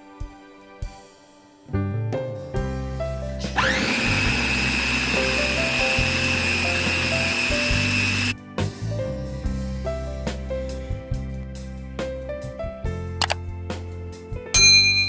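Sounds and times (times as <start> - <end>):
background music: 0.0 - 15.0
electric blender motor whining: 3.4 - 8.4.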